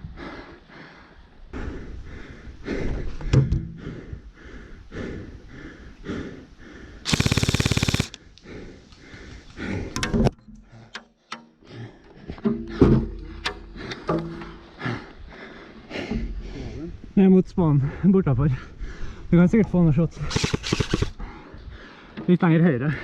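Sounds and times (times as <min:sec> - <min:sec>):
airsoft gun full-auto burst: 0:07.1 - 0:08.2, 0:20.3 - 0:21.2.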